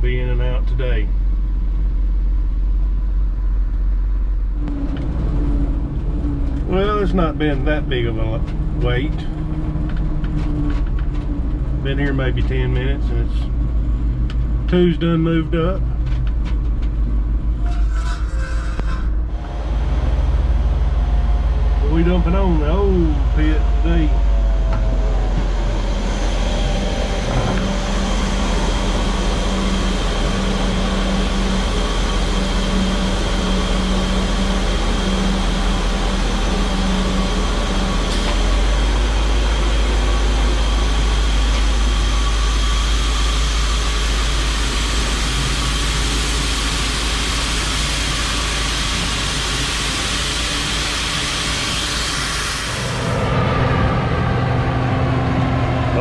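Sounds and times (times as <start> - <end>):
truck engine droning: 0.0 - 56.0.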